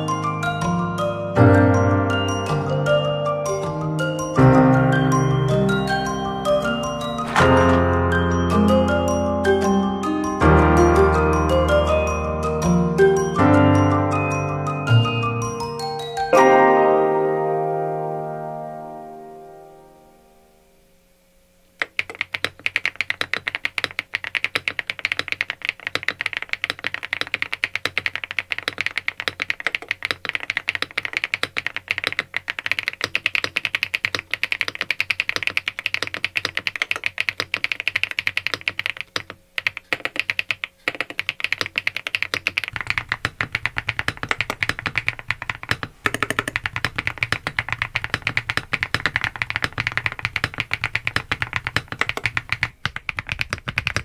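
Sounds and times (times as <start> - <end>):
mechanical keyboard typing: 5.7 - 8.0, 21.8 - 54.0.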